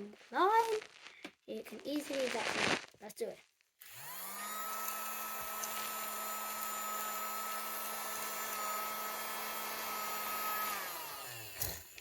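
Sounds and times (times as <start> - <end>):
handheld vacuum motor whining: 3.8 - 12.0.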